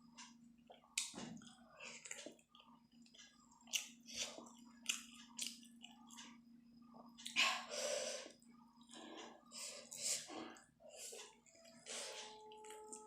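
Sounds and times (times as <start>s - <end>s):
close-up chewing food: 0.2s - 7.5s, 8.2s - 13.0s.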